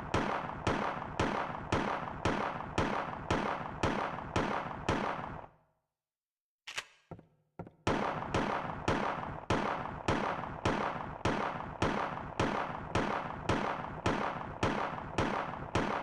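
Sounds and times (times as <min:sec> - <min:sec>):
pistol shots echoing: 0:07.9 - 0:16.0.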